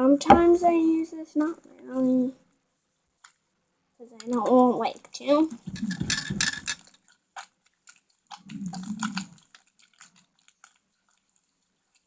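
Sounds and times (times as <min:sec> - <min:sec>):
slime squishing by hand: 0:04.2 - 0:12.0.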